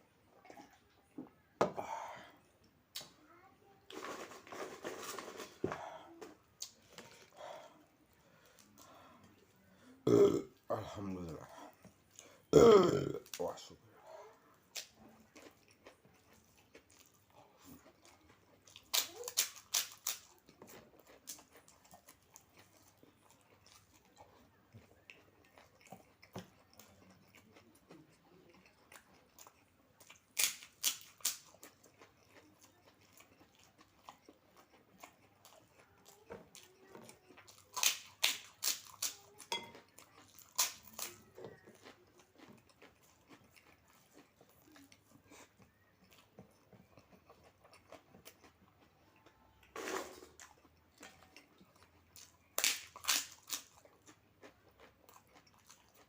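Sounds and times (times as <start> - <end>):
chewing food: 0.2 - 10.4, 13.2 - 56.0
crisp crunching of crackers: 3.9 - 5.7, 14.7 - 56.0.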